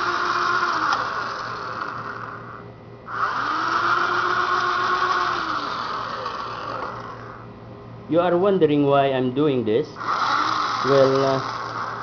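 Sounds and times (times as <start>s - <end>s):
electric drill boring into wood: 0.0s - 7.4s, 10.0s - 12.0s.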